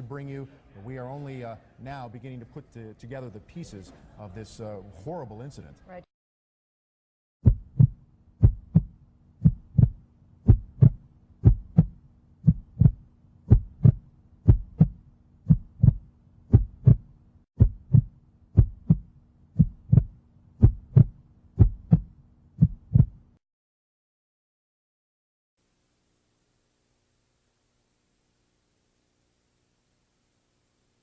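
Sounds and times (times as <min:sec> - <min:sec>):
heartbeat thumping: 0:07.4 - 0:23.3.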